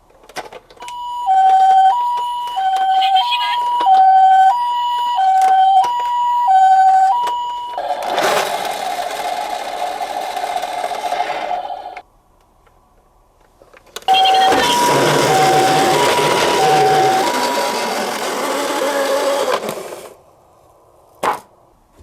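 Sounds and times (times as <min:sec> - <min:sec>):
toy two-tone siren: 0:00.8 - 0:08.3, 0:14.1 - 0:19.6.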